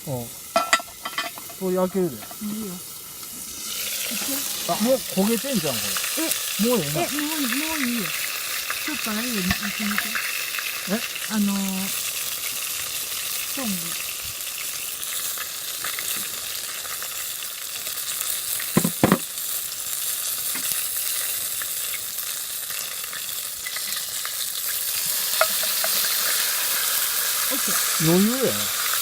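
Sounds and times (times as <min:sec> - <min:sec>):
food sizzling in a pan: 0:00.0 - 0:29.0.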